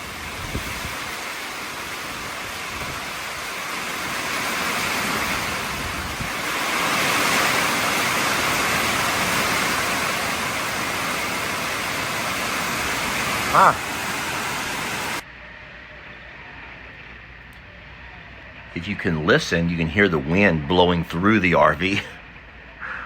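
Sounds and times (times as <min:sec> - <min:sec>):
heavy rain: 0:00.0 - 0:15.2, 0:18.8 - 0:23.0
wind gusting: 0:00.0 - 0:15.2.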